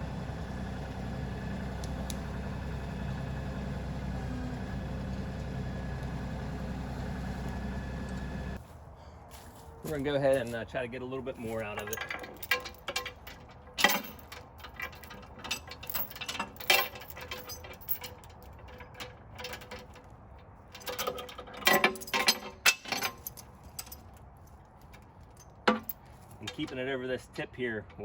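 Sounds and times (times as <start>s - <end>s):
steel chain clinking and rattling: 11.4s - 26.8s.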